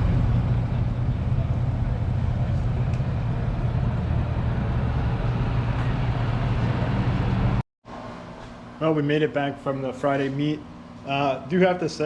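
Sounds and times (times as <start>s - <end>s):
vehicle engine drone: 0.0s - 7.6s.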